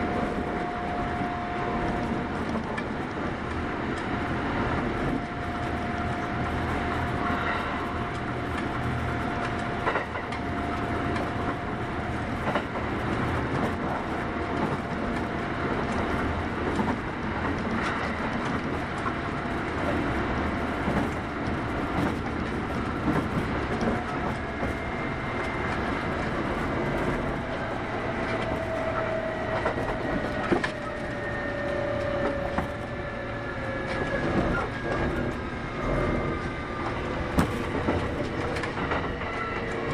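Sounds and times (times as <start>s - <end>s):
faint train whine: 0.0s - 39.9s
rail joint clicks: 0.0s - 39.9s
train wheels rumbling on rail: 0.0s - 39.9s.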